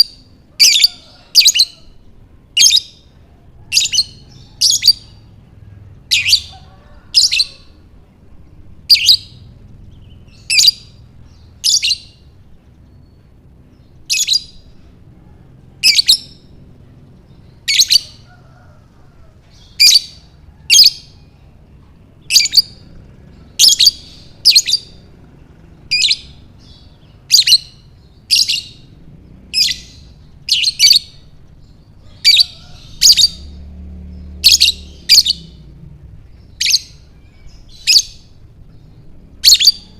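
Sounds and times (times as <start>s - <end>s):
bird chirping shrilly: 6.0s - 8.0s, 8.7s - 14.9s, 15.8s - 16.6s, 17.2s - 18.4s, 22.2s - 25.2s, 25.8s - 35.6s, 36.5s - 39.9s.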